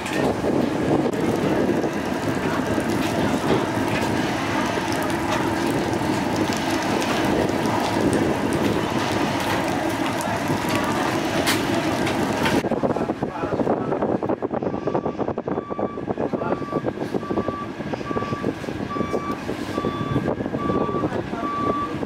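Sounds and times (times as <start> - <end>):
rushing water and spray: 0.0 - 12.7
ferry engines droning: 0.0 - 22.0.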